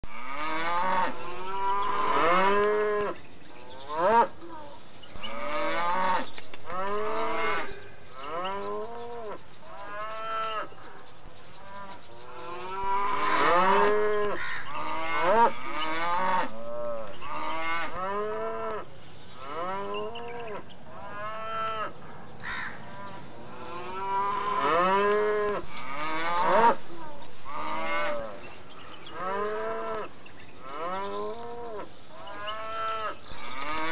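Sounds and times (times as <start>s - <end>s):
cattle mooing: 0.1s - 4.6s, 11.6s - 18.8s, 19.4s - 22.0s, 22.9s - 28.5s, 29.1s - 33.9s.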